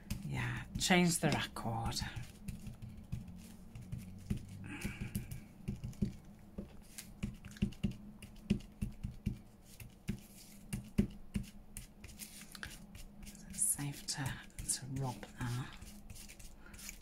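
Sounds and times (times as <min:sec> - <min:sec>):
ink tool tapping on paper: 0:00.0 - 0:12.2.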